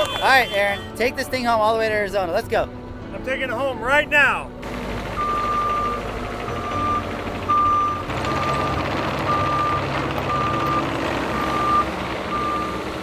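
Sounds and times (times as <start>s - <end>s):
diesel engine running: 4.5s - 13.0s
excavator alarm beeping: 4.6s - 13.0s.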